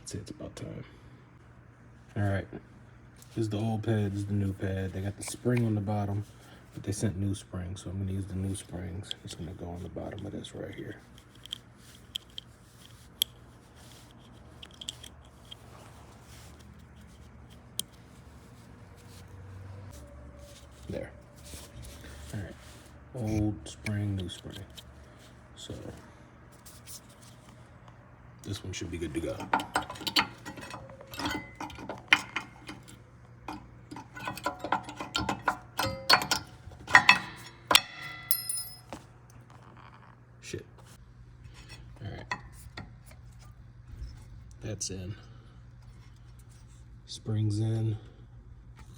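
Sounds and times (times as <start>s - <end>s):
metal brake pad clinking: 29.1s - 39.0s.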